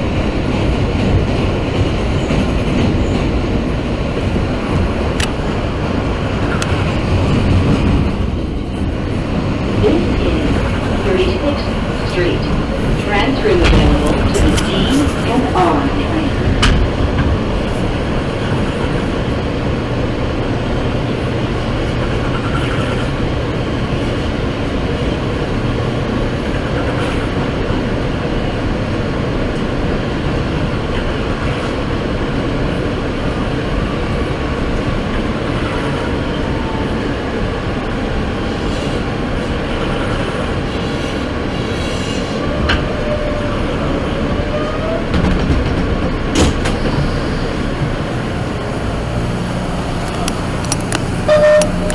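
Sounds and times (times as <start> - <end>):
subway train wheels rumbling: 0.0 - 51.9
faint wheel squeal: 51.3 - 51.9.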